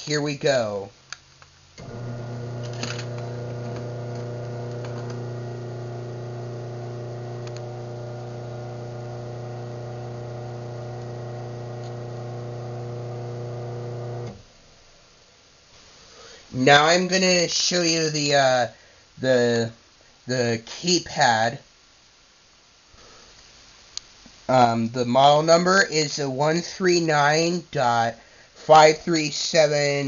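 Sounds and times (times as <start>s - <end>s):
garage door opener motor hum: 1.8s - 14.5s.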